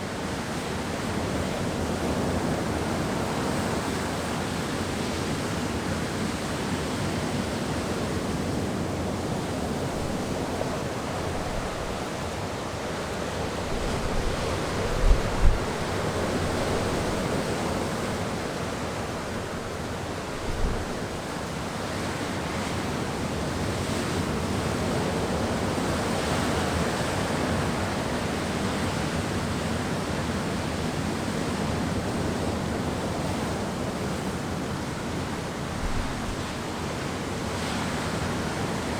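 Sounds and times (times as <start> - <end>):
wind buffets on microphone: 12.9 - 21.5, 35.7 - 36.8
wind blowing: 13.4 - 21.4, 35.7 - 36.8.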